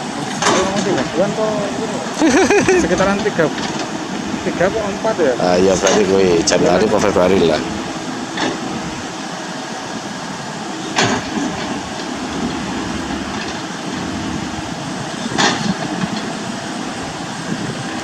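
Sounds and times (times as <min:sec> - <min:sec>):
excavator engine running: 0:00.0 - 0:18.0.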